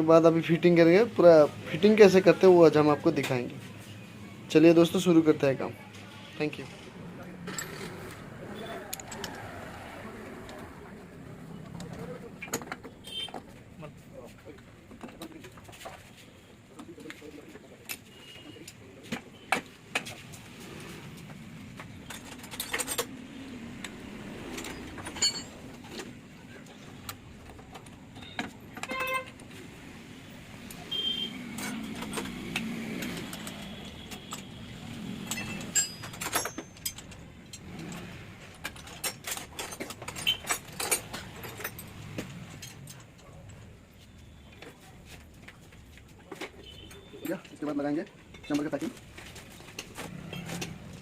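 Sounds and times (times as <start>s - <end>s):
metal parts and tools clicking: 6.8s - 9.8s, 17.9s - 43.8s, 48.2s - 51.0s
ringing metallic clink: 25.1s - 25.6s, 35.3s - 37.1s.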